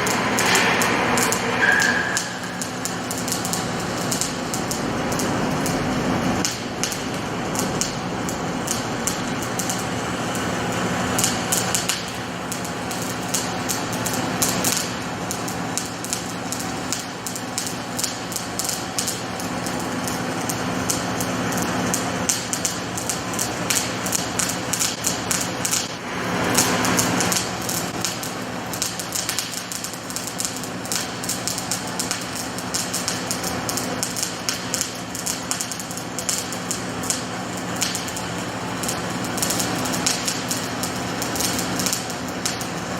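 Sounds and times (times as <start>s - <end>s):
electrical hum: 0.0s - 13.4s
welding arc crackling: 0.0s - 42.9s
welding hiss: 0.0s - 42.9s.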